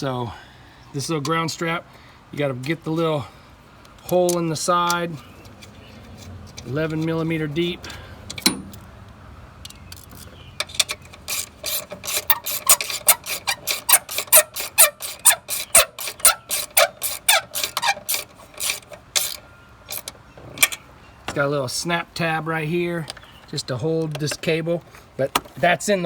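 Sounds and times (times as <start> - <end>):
ratchet clicking: 9.6 - 20.8.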